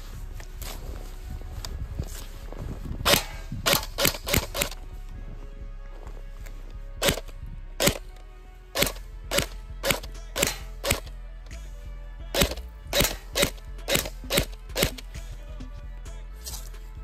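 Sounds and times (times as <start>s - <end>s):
airsoft gun shots: 3.1s - 4.8s, 7.0s - 8.0s, 8.8s - 11.1s, 12.4s - 15.1s.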